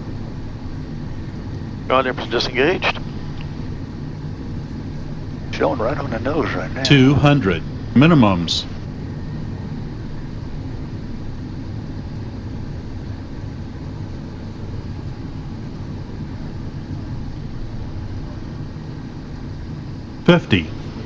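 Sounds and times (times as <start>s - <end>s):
aircraft engine and airflow rumble: 0.0s - 21.0s.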